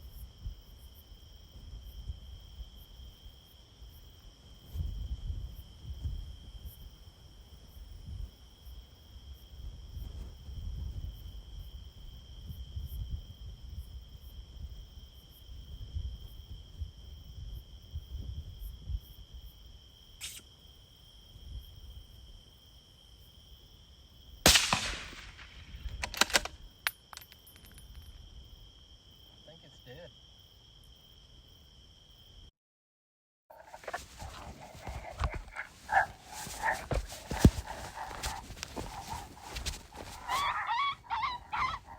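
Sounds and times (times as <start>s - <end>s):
crickets trilling: 0.0s - 32.5s, 33.5s - 41.9s
suppressed rifle shot: 24.5s - 26.5s.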